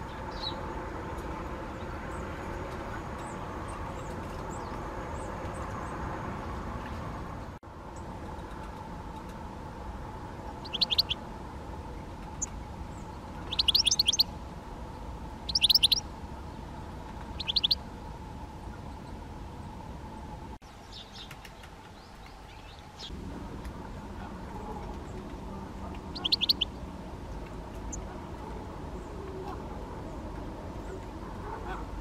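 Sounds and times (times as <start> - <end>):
low background hum: 0.0 - 32.0
woodpecker calling: 10.6 - 11.2, 13.4 - 14.3, 15.5 - 16.0, 17.3 - 17.8, 26.0 - 26.7.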